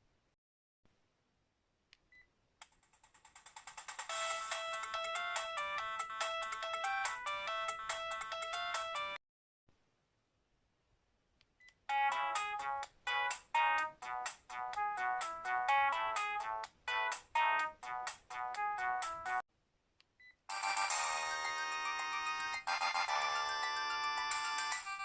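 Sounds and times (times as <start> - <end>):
phone ringtone chiming melody: 4.1 - 9.2, 11.9 - 13.8, 20.5 - 25.0.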